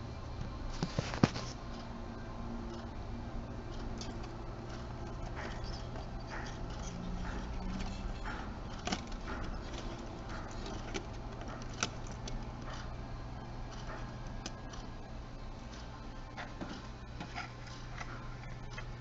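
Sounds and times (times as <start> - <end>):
steady low hum: 0.0 - 19.0
small parts clicking and scratching: 3.7 - 12.9.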